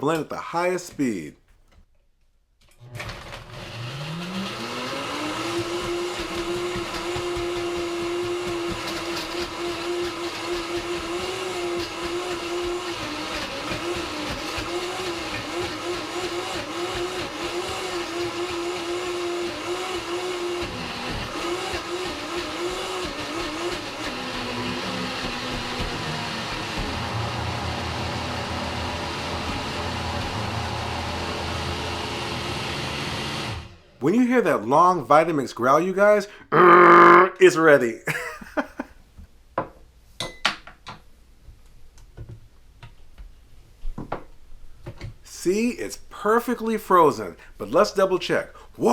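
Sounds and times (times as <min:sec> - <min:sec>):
blender motor crushing ice: 0:02.7 - 0:33.9.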